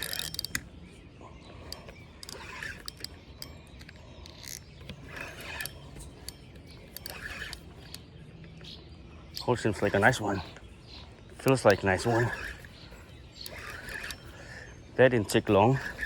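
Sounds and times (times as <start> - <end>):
fishing reel clicking: 0.0 - 0.7, 1.7 - 8.0, 11.4 - 16.0.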